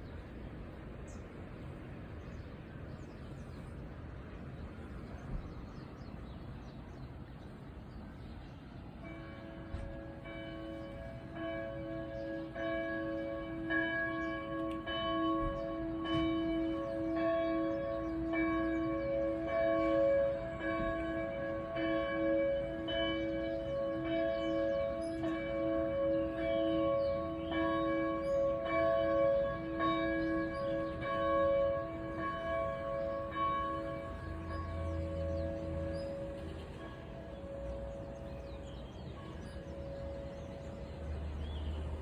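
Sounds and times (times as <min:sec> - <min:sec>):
church bell ringing: 0:09.0 - 0:42.0.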